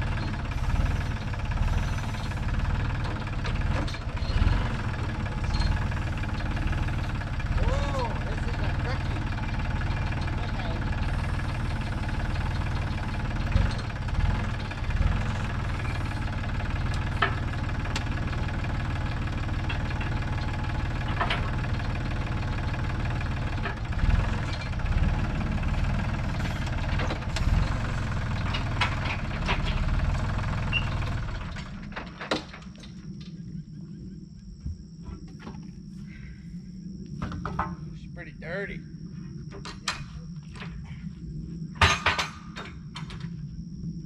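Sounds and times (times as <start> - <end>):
engine idling: 0.0 - 33.8.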